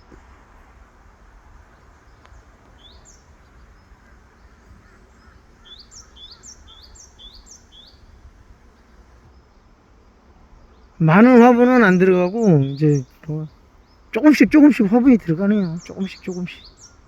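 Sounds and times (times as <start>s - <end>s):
faint steady hum: 0.0s - 17.0s
bird chirping: 1.8s - 8.1s, 10.7s - 17.0s.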